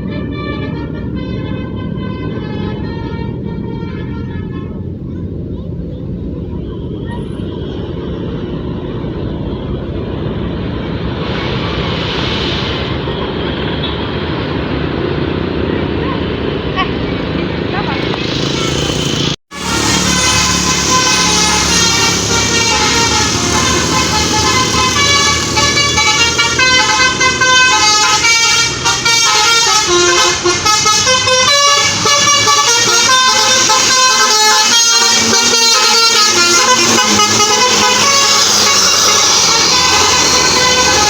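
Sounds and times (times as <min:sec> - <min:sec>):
bus horn playing a fast tune: 0:00.0 - 0:05.4, 0:18.5 - 0:41.0
bus engine running: 0:00.0 - 0:41.0.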